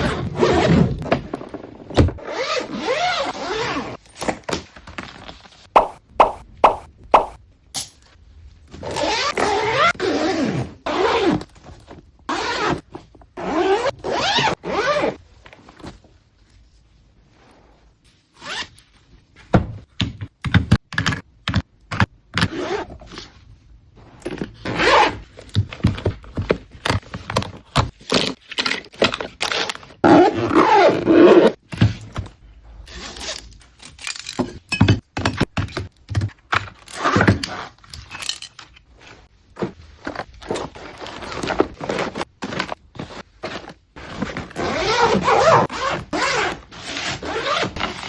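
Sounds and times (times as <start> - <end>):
items clicking and knocking: 33.2 - 38.9.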